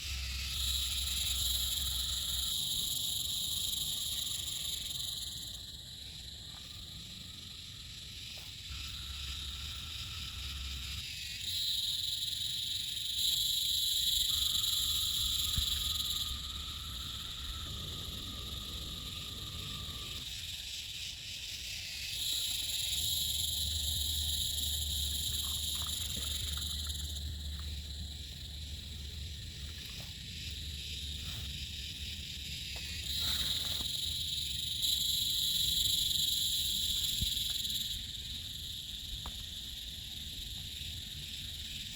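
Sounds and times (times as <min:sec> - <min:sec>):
night insects buzzing trill: 0:00.0 - 0:41.9.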